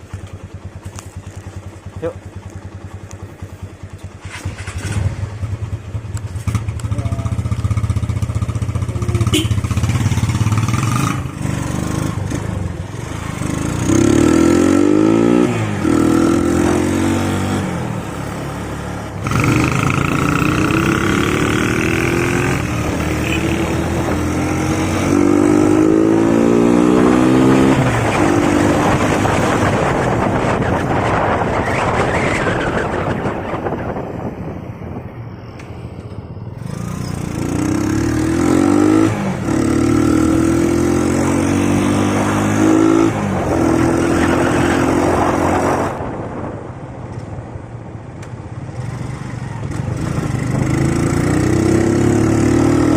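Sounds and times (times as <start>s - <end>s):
motorcycle engine accelerating: 0.0s - 52.9s
wind noise: 13.4s - 52.9s.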